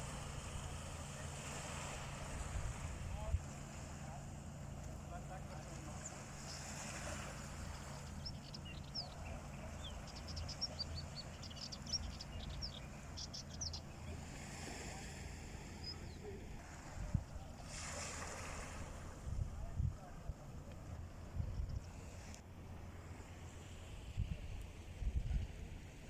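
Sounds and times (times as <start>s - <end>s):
low rumble of sea: 0.0s - 26.0s
small birds chirping: 4.8s - 14.2s, 15.6s - 16.5s.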